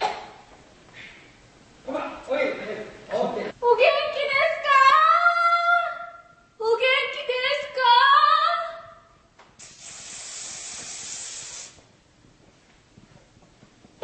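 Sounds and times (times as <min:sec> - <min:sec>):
steady hiss: 0:09.3 - 0:14.0.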